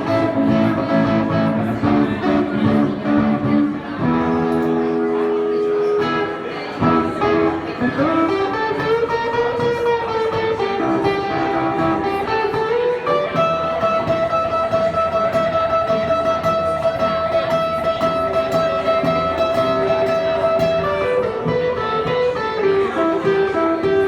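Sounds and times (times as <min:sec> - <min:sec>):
electric guitar slow melody: 0:00.0 - 0:24.0.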